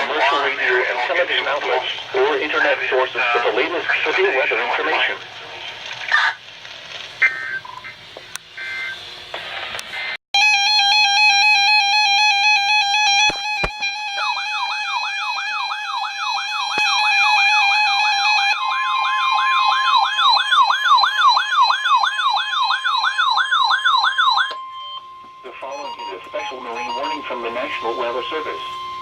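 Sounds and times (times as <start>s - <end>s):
radio static: 0.0s - 8.8s, 25.4s - 28.8s
single-pitch warning alarm tone: 10.4s - 29.0s.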